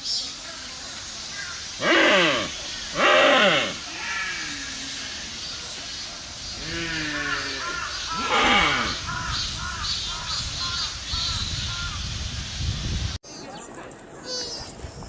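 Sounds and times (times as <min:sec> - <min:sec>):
deer calling: 0:01.3 - 0:05.3, 0:06.6 - 0:09.8.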